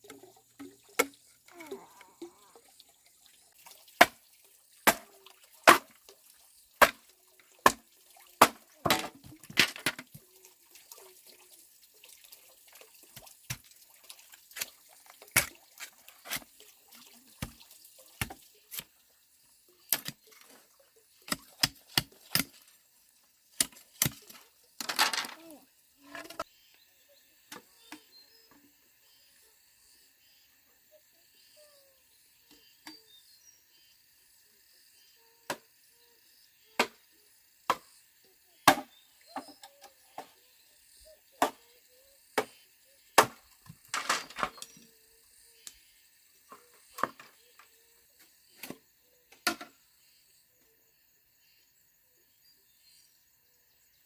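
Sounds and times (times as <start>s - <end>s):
water sounds: 0.0s - 26.5s
insects chirping: 0.0s - 54.0s.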